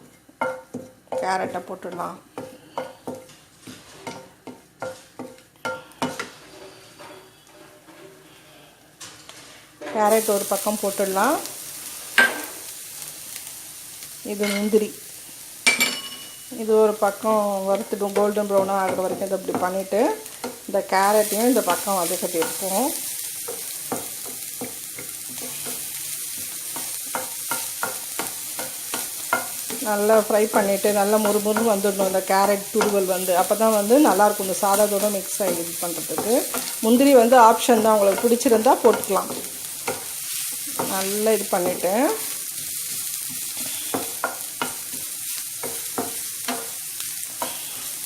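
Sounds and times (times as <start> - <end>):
food sizzling in oil: 10.0 - 48.0
spoon scraping pan: 17.1 - 48.0.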